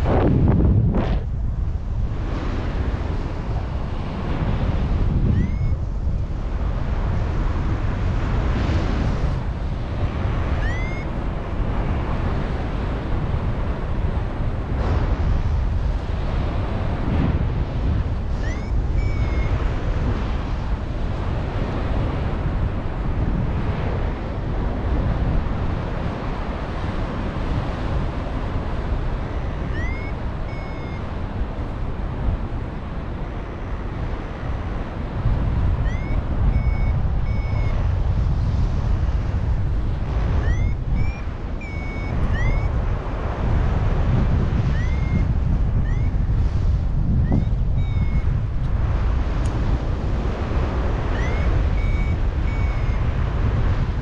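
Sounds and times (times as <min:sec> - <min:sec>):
wind buffeting microphone: 0:00.0 - 0:54.0
variometer beeping: 0:05.3 - 0:05.8, 0:10.5 - 0:11.1, 0:18.4 - 0:19.7, 0:29.4 - 0:31.2, 0:35.7 - 0:37.9, 0:40.3 - 0:42.8, 0:44.6 - 0:46.3, 0:47.2 - 0:48.4, 0:51.0 - 0:53.4.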